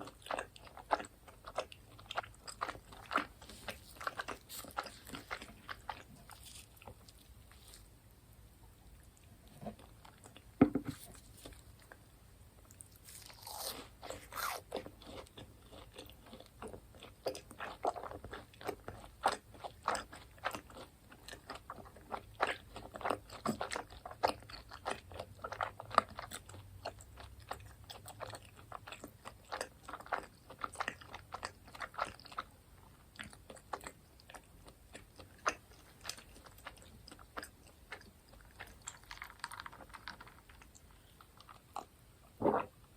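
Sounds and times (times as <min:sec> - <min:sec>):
crunchy food chewing: 0:00.0 - 0:07.9, 0:12.6 - 0:42.7.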